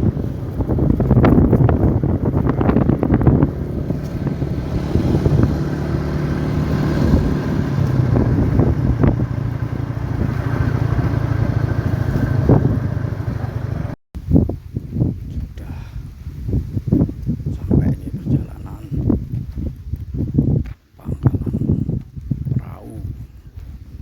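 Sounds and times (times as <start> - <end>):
small engine running: 0.0 - 14.0
wind buffeting microphone: 0.0 - 24.0.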